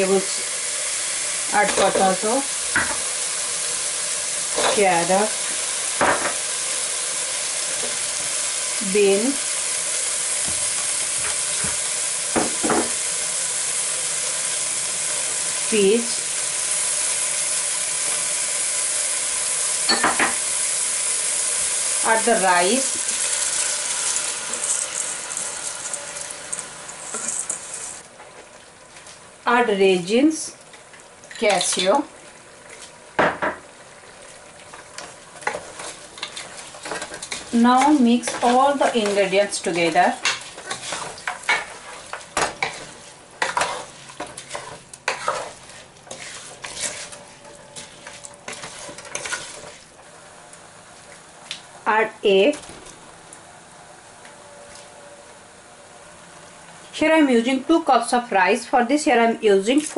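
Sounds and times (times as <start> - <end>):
frying sizzle: 0.0 - 59.9.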